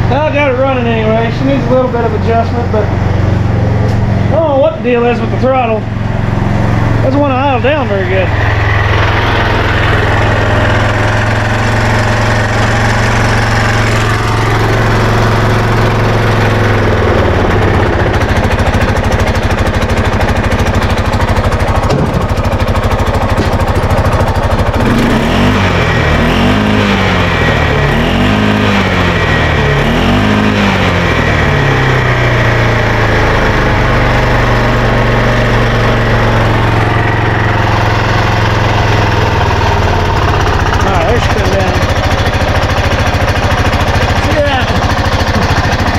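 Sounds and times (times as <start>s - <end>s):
loud engine idling and revving: 0.0s - 45.9s.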